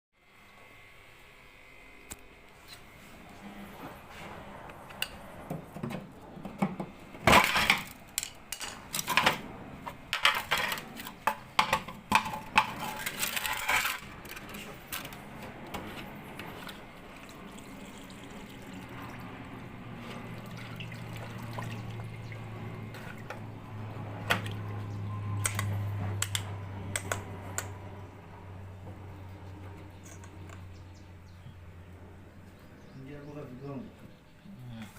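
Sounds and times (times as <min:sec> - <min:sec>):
low machine hum: 0:00.2 - 0:34.9.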